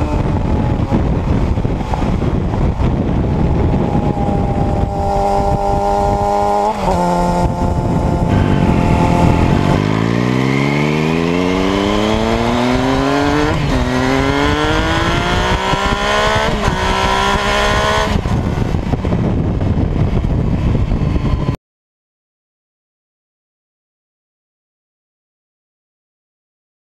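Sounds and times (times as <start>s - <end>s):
engine accelerating through gears: 0.0s - 20.3s.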